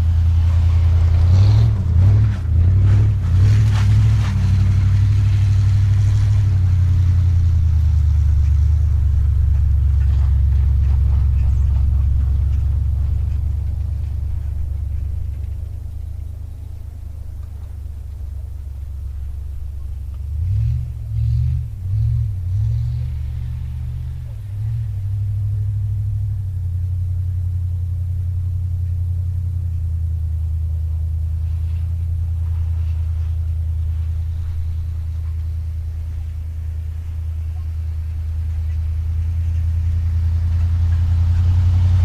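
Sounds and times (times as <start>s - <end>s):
car engine running: 0.0s - 42.0s.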